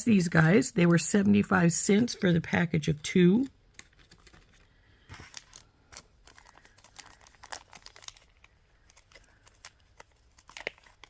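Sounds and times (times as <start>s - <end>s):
package rustling: 3.7s - 11.0s.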